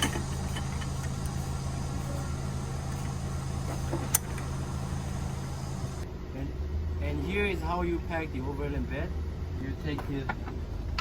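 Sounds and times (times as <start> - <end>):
motor humming: 0.0 - 6.0.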